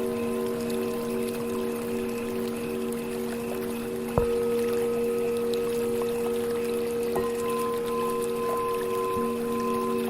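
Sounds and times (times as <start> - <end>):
creek running water: 0.0 - 10.0
singing bowls ringing: 0.0 - 10.0.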